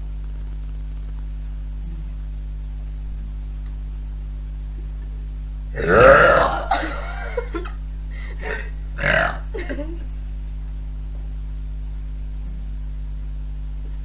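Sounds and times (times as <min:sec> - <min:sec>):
low hum: 0:00.0 - 0:14.0
girl burping: 0:05.8 - 0:07.6, 0:08.4 - 0:10.0.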